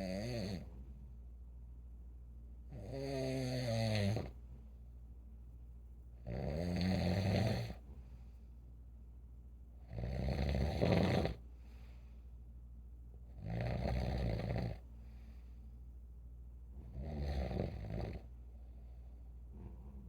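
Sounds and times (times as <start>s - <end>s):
steady low hum: 0.0s - 20.0s
person snoring: 2.7s - 4.3s, 6.3s - 7.8s, 9.9s - 11.4s, 17.0s - 18.2s.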